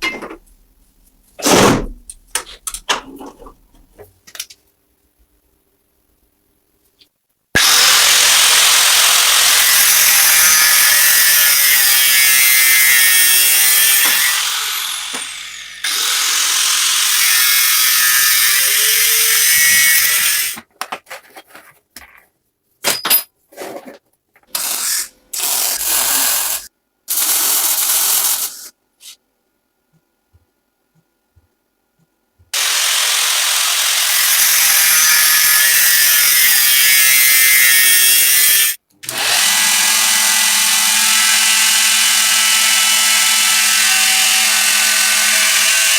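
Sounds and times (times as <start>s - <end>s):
handheld power tool running: 7.6s - 20.6s, 24.5s - 28.6s, 32.6s - 45.9s.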